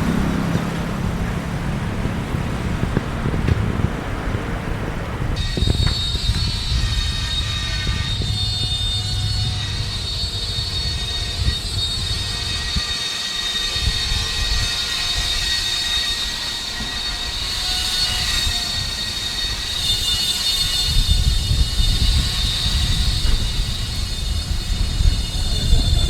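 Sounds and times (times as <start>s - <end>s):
road traffic rumbling: 0.0s - 26.0s
high thin tones: 5.4s - 26.0s.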